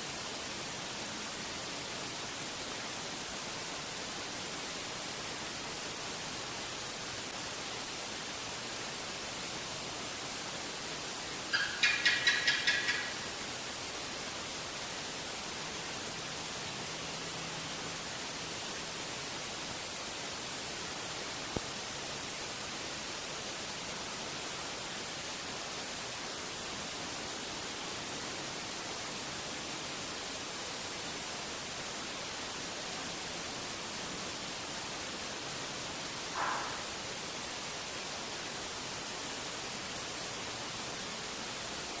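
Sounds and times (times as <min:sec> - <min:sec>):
static-like hiss: 0:00.0 - 0:42.0.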